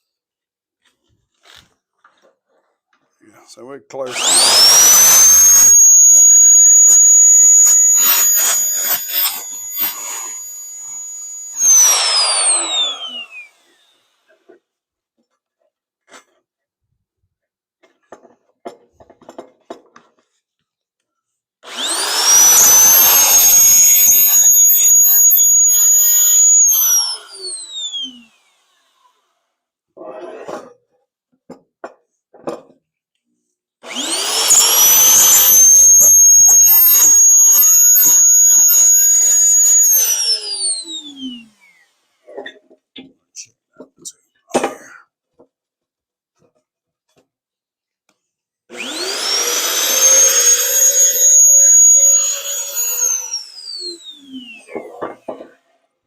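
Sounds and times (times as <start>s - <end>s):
electric drill whining: 4.1s - 14.2s, 21.6s - 29.2s, 33.8s - 41.9s, 48.7s - 55.4s.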